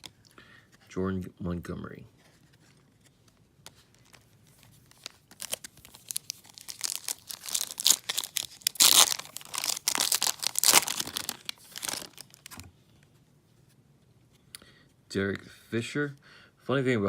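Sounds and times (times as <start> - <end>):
foil wrapper crinkling and tearing: 3.9 - 12.7.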